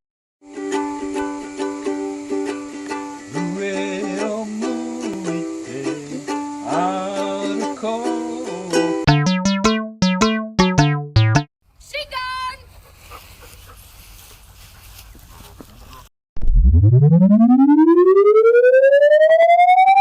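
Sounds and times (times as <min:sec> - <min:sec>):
ukulele strumming: 0:00.5 - 0:11.4
short sharp pitched notes: 0:09.1 - 0:11.5
gliding wavering pitch: 0:16.6 - 0:20.0.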